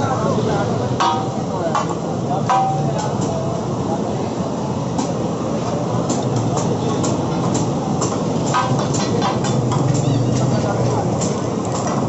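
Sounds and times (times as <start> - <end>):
metal spatulas clinking on pan: 6.9 - 12.0.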